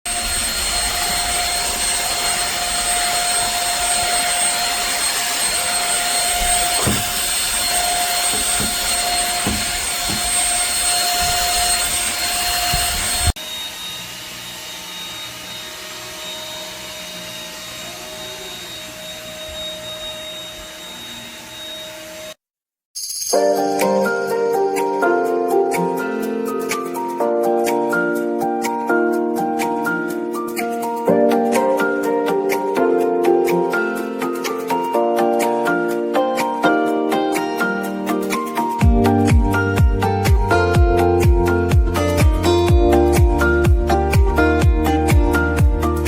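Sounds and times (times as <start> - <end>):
stick vacuum running: 0.1 - 22.4.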